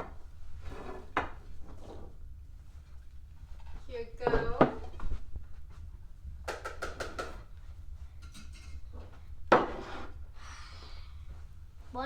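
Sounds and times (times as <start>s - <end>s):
plates and cutlery clinking: 8.2s - 10.1s.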